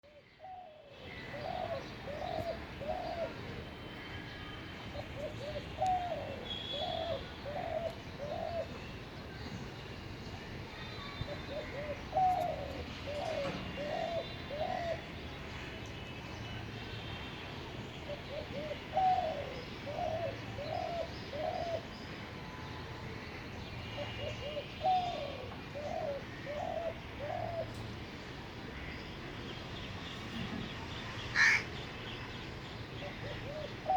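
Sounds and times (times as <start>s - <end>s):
dove cooing: 0.4s - 3.4s, 5.2s - 8.7s, 11.3s - 15.0s, 18.1s - 21.9s, 24.0s - 27.8s, 33.0s - 33.9s.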